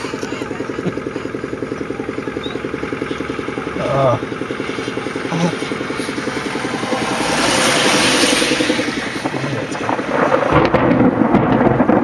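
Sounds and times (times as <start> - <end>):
thunder rumbling: 3.2 - 12.0
rain: 3.6 - 12.0.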